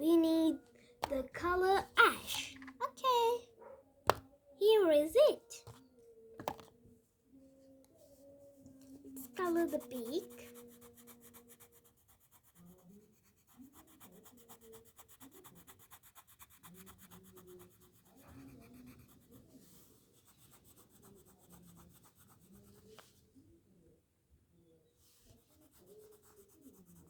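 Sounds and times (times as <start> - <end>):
faint distant voices: 0.0 - 27.0
pencil scratching on paper: 6.4 - 6.7, 9.2 - 23.0, 25.3 - 27.0.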